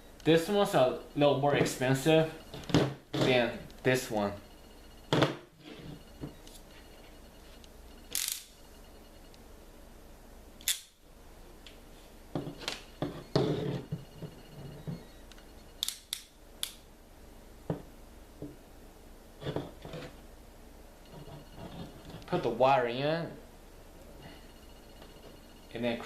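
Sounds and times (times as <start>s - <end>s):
wire crimper ratchet clicks: 15.8s - 16.8s.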